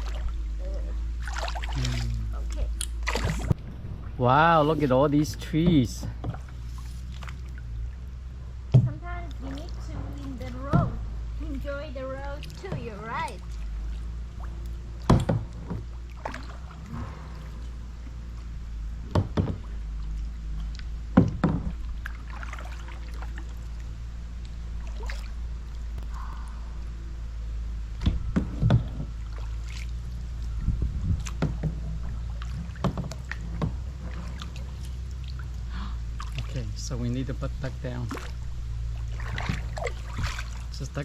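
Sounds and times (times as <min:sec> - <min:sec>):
low rumble: 0:00.0 - 0:41.0
paddle strokes through water: 0:00.0 - 0:41.0
sharp knocks: 0:19.0 - 0:19.7.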